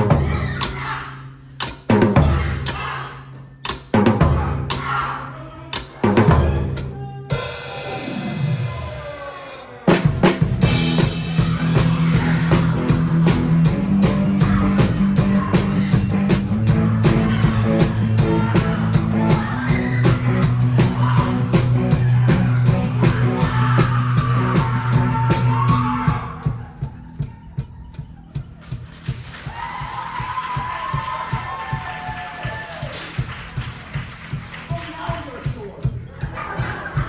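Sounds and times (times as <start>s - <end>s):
drum kit playing: 1.6s - 3.0s, 3.6s - 5.0s, 5.7s - 37.0s
rock band playing: 5.8s - 34.6s.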